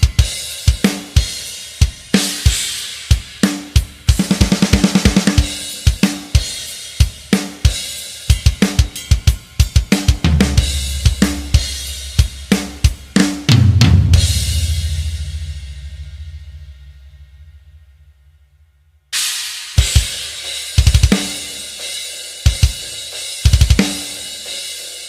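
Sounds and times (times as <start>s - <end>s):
drum kit hits with cymbals: 0.0s - 18.0s, 19.1s - 25.0s
snare drum roll: 3.4s - 6.4s, 9.8s - 15.6s.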